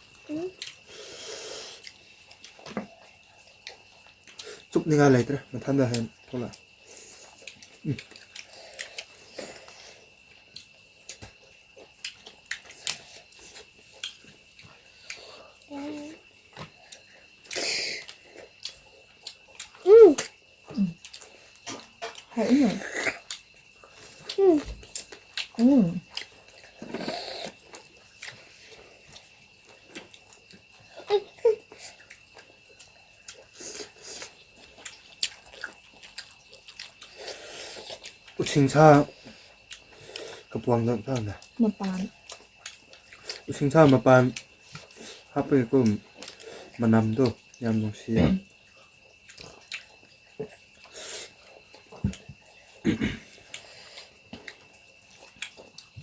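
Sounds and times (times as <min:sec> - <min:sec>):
chewing and wet mouth sounds: 0:00.0 - 0:56.0
wet lip smacks and chewing: 0:10.3 - 0:15.2, 0:32.0 - 0:37.2, 0:49.0 - 0:52.6, 0:53.5 - 0:56.0
slurp: 0:26.8 - 0:27.6.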